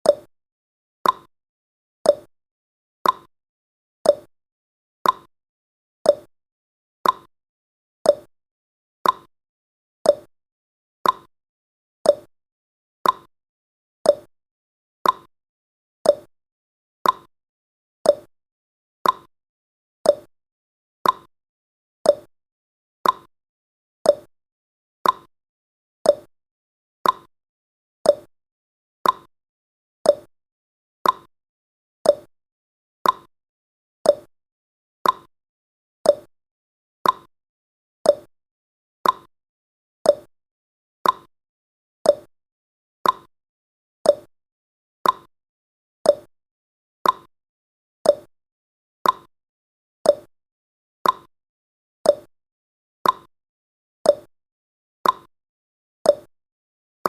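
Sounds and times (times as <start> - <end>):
clock ticking: 19.0 - 19.3, 35.0 - 35.3, 39.0 - 39.3, 43.0 - 43.3, 49.0 - 49.3, 51.0 - 51.3.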